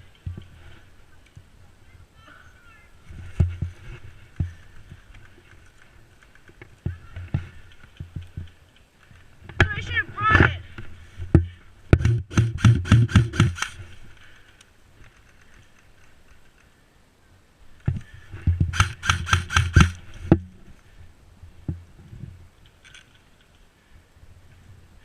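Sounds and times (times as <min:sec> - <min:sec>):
airsoft gun firing: 0:12.0 - 0:13.8, 0:18.7 - 0:20.0.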